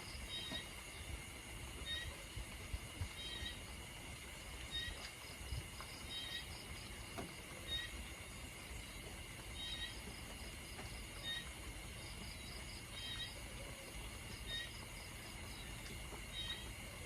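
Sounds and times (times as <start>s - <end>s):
light rain: 0.0s - 17.0s.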